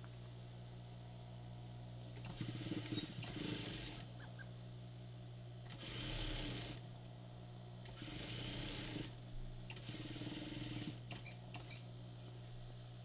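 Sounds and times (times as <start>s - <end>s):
steady low hum: 0.0s - 13.0s
sewing machine stitching: 2.2s - 4.1s, 5.7s - 6.8s, 7.8s - 11.8s.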